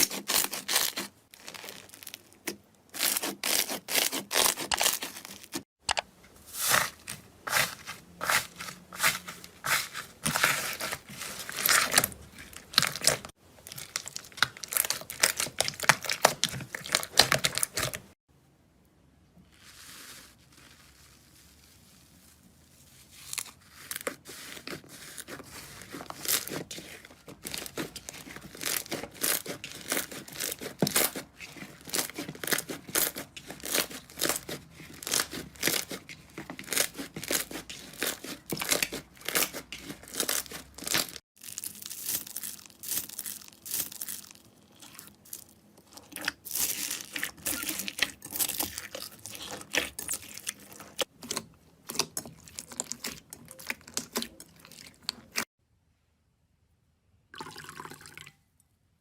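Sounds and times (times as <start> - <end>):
slime crackling and popping: 10.2 - 18.0, 36.6 - 55.4.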